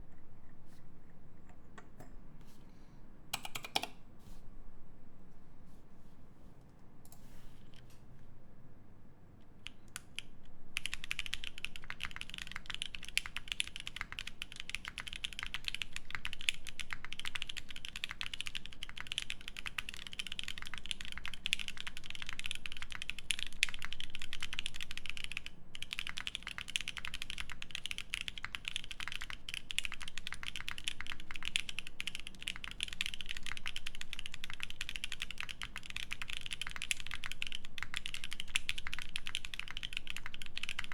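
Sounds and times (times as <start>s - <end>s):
mechanical keyboard typing: 3.3s - 4.0s, 9.6s - 40.9s.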